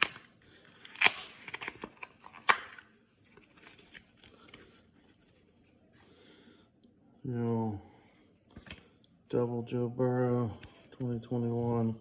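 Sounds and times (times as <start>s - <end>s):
packaging tearing: 0.0s - 2.9s.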